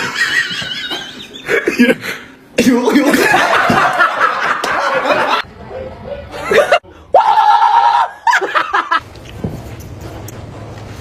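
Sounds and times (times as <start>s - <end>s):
people laughing: 0.0s - 2.0s, 2.9s - 5.5s, 6.3s - 6.8s, 8.1s - 9.0s.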